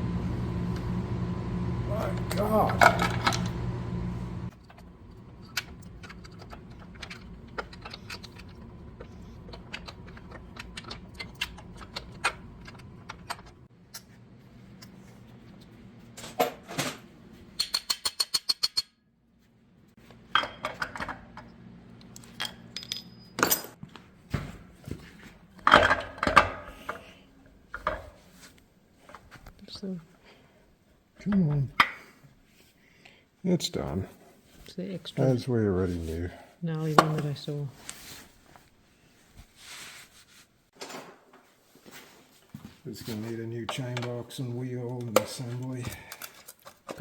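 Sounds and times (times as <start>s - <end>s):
metal tools clinking: 22.2s - 23.8s.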